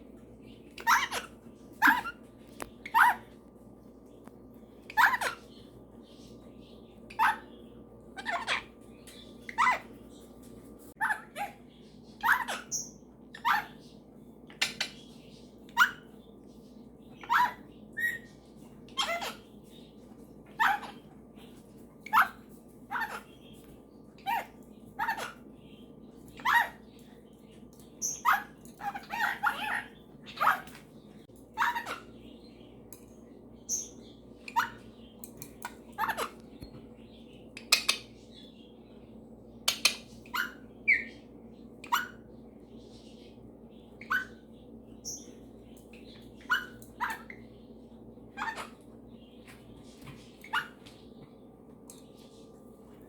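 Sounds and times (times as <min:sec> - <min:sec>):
parrots chirping: 0:00.4 - 0:03.4, 0:04.7 - 0:10.4, 0:11.0 - 0:38.8, 0:39.5 - 0:51.4
parrot squawks: 0:00.8 - 0:02.2, 0:02.9 - 0:03.3, 0:04.9 - 0:05.5, 0:11.0 - 0:11.6, 0:12.2 - 0:13.8, 0:17.2 - 0:18.3, 0:19.0 - 0:19.5, 0:20.6 - 0:21.0, 0:22.1 - 0:23.3, 0:24.2 - 0:25.4, 0:26.4 - 0:26.8, 0:28.0 - 0:30.7, 0:31.6 - 0:32.1, 0:44.0 - 0:44.4, 0:46.4 - 0:47.4, 0:48.3 - 0:48.8.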